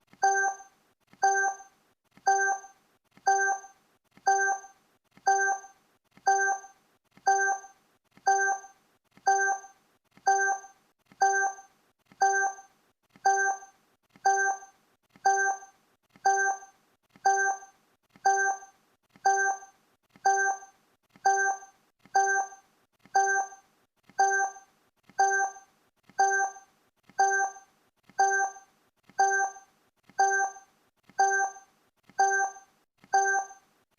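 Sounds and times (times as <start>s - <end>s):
ringing timer ticks: 0.1s - 33.7s.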